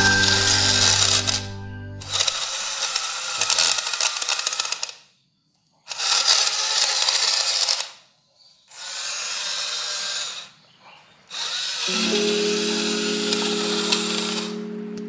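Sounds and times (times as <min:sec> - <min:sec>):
toy gear motors whirring: 0:02.1 - 0:05.1, 0:05.9 - 0:08.0, 0:08.7 - 0:10.5, 0:11.3 - 0:11.9.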